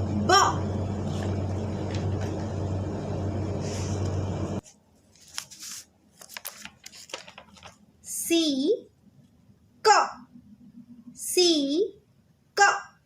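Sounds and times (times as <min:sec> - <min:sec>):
low hum with hiss: 0:00.0 - 0:05.3, 0:07.3 - 0:13.0
faint clicks and rustles: 0:03.9 - 0:07.9.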